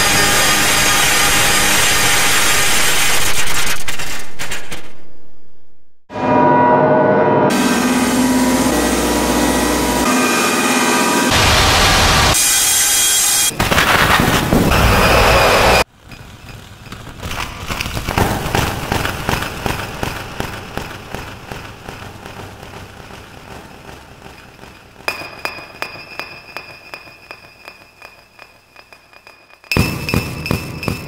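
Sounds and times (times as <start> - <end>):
crackling and popping: 15.9 - 25.9.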